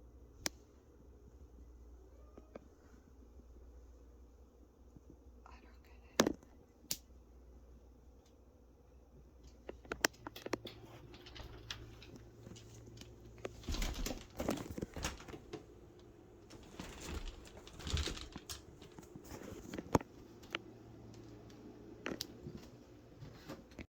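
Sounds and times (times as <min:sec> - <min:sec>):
rustling and clattering: 0:09.5 - 0:20.6.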